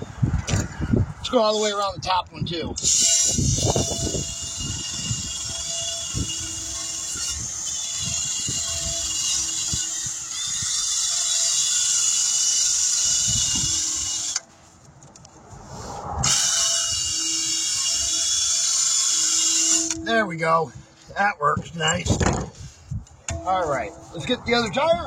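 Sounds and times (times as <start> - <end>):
power tool whirring: 2.8 - 14.5, 16.2 - 20.1.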